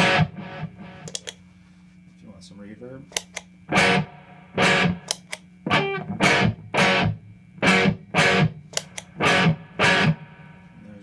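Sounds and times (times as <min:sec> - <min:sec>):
electric guitar strummed chords: 0:00.0 - 0:01.2, 0:03.7 - 0:11.0.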